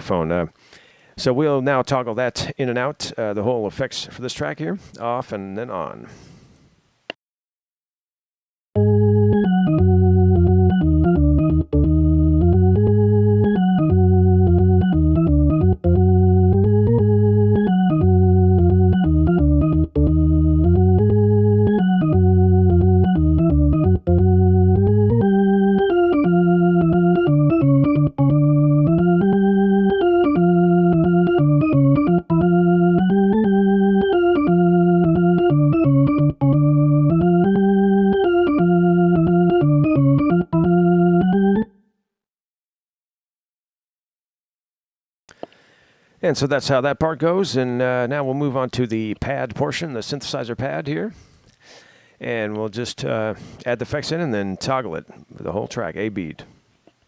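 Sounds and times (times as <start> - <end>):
jazz organ chords: 8.8 - 41.8.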